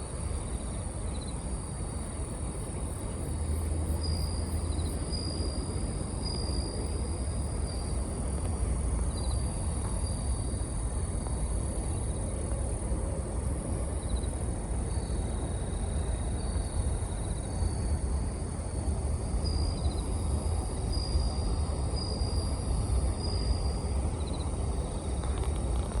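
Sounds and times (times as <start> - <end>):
crickets singing: 0.1 - 26.0.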